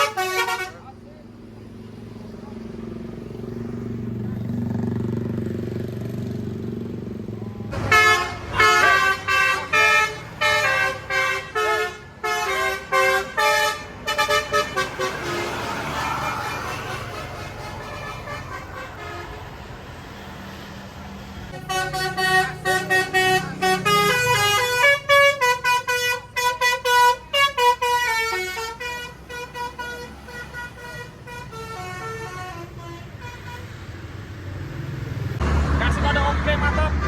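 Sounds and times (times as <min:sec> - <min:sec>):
multi-tone air horn tune: 0:00.0 - 0:00.8, 0:07.8 - 0:19.7, 0:21.5 - 0:33.8.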